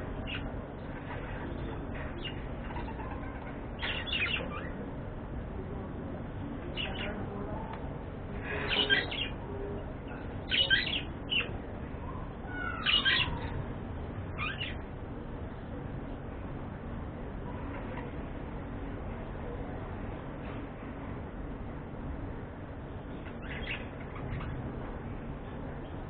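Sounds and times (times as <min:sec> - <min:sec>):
low background noise: 0:00.0 - 0:26.0
budgerigars chirping: 0:02.2 - 0:04.7, 0:10.5 - 0:11.5, 0:12.6 - 0:13.5.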